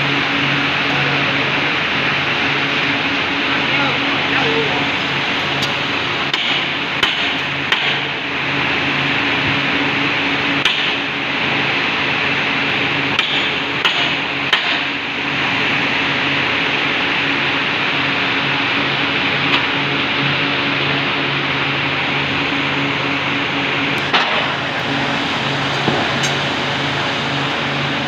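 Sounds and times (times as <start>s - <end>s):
furnace roaring: 0.0s - 28.0s
sharp knocks: 6.3s - 8.1s, 13.2s - 14.9s.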